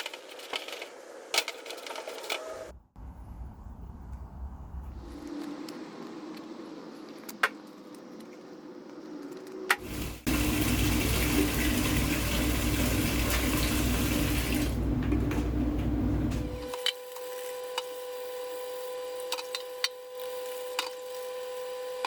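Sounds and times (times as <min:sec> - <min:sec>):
tap water running into sink: 0:09.8 - 0:15.4.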